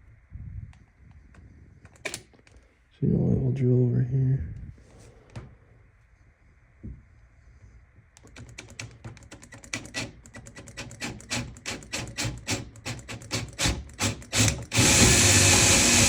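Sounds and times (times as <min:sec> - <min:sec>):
electric drill boring into wood: 0:10.7 - 0:16.0.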